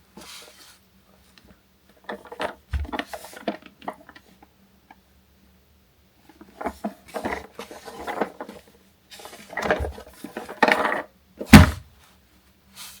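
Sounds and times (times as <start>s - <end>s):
plastic toy clattering: 2.0s - 4.4s, 6.3s - 11.8s.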